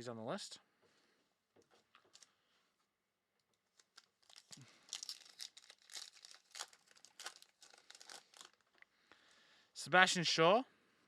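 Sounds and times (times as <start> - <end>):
plastic wrapping crinkling: 3.6 - 8.9.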